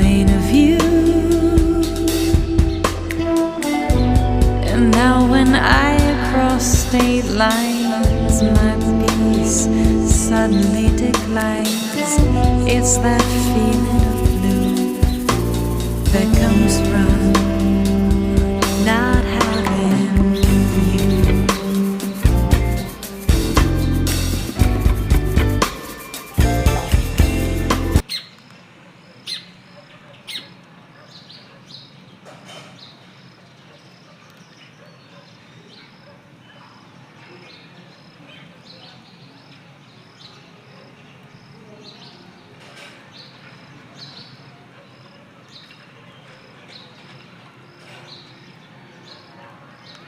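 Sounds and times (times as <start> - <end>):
background music: 0.0 - 28.0.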